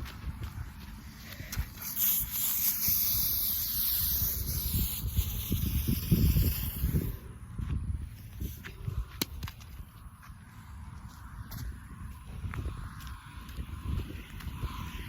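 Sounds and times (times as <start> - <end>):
wind and handling rumble: 0.0 - 15.0
soda can spraying hiss: 1.7 - 7.2.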